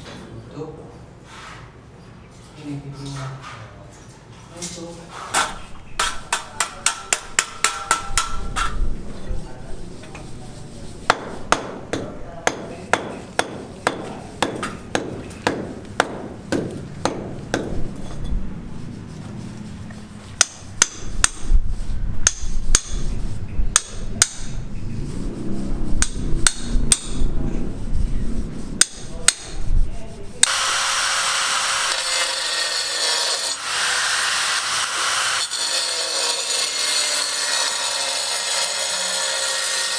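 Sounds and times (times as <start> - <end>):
hammer blows: 11.0 - 18.7
power saw cutting: 30.4 - 39.9.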